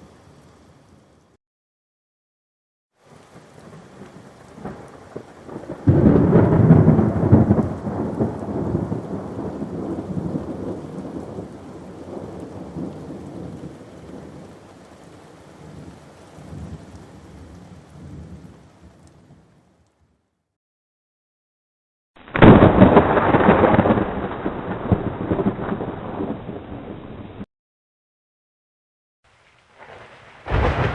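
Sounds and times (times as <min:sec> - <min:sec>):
thunder clap and rumble: 0:04.6 - 0:14.5, 0:22.3 - 0:27.5, 0:29.8 - 0:30.9.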